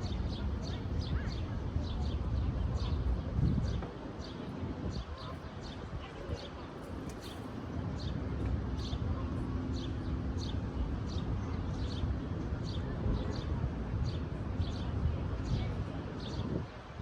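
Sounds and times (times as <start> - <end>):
low wind rumble: 0.0 - 7.0.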